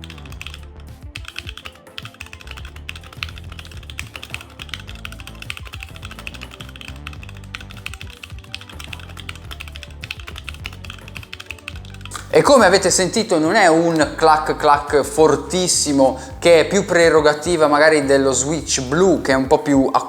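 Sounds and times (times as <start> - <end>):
fast typing on mechanical keyboard: 0.0 - 12.2
background music: 0.0 - 20.0.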